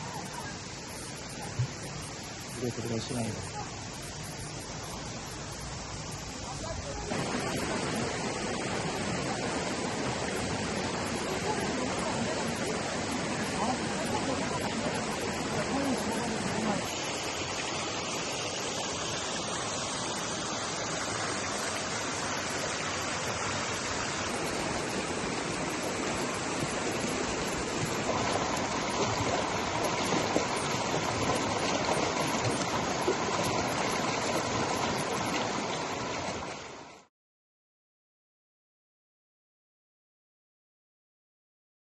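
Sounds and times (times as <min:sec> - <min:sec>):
stream rushing over rocks: 0:00.0 - 0:37.1.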